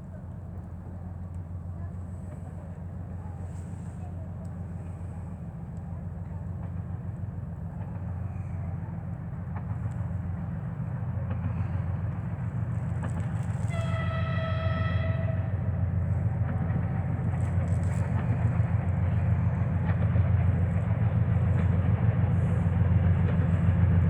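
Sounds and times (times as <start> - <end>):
diesel locomotive engine rumbling: 0.0 - 24.0
locomotive horn: 13.6 - 15.8.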